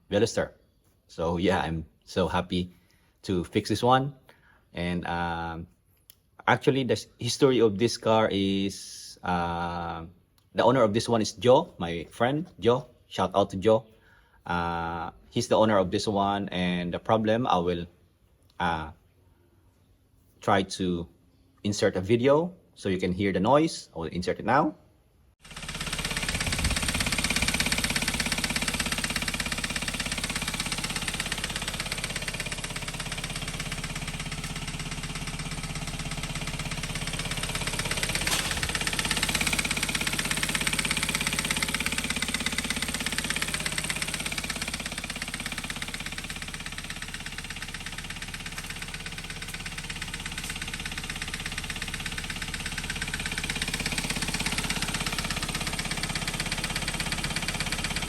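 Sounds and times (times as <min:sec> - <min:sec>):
car engine running: 0:25.4 - 0:58.0
rapid knocking inside engine: 0:25.4 - 0:58.0.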